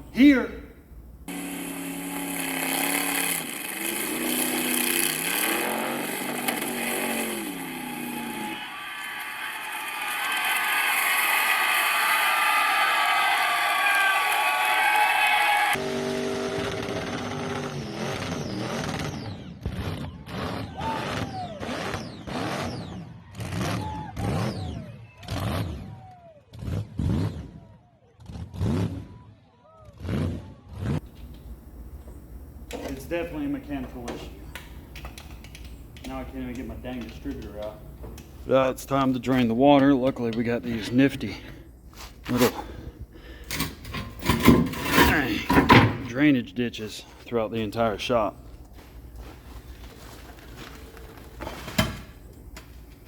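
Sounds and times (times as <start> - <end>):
car engine revving: 1.3 - 12.3, 15.4 - 20.7.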